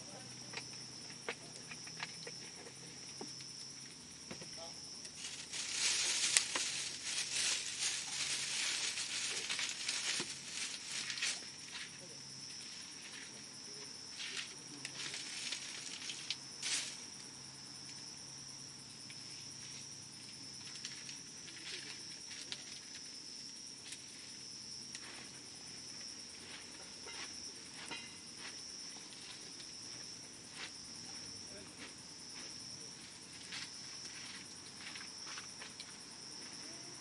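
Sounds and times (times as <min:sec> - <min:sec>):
insect trilling: 0:00.0 - 0:37.0
campfire crackling and popping: 0:00.5 - 0:11.6.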